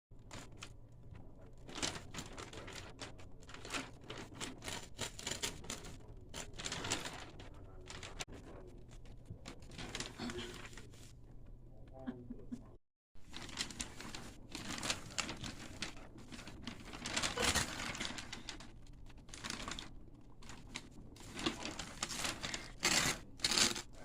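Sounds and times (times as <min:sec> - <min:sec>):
wrapping paper crinkling: 0:00.2 - 0:11.2, 0:13.2 - 0:24.0
paper tearing: 0:01.7 - 0:08.2, 0:13.3 - 0:18.7, 0:20.5 - 0:24.0.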